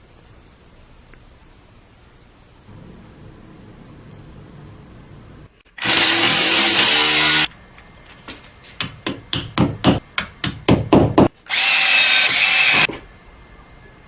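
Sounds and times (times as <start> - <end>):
small power tool running: 5.8 - 7.5, 11.5 - 12.9.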